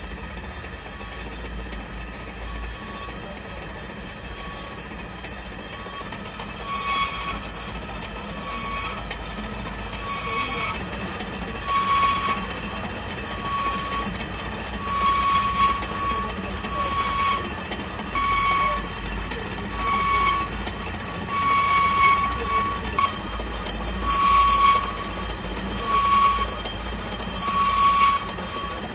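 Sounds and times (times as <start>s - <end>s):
lathe tool squealing against metal: 0.0s - 28.9s.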